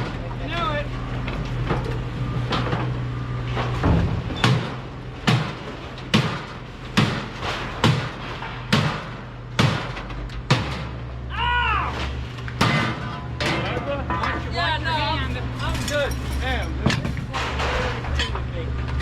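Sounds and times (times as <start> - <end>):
hammer-like knocks: 15.3 - 17.9.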